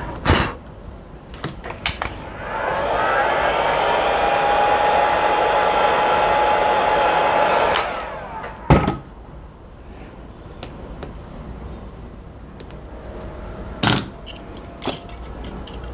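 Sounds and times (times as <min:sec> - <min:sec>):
hot-air blower whining: 0:01.8 - 0:09.2.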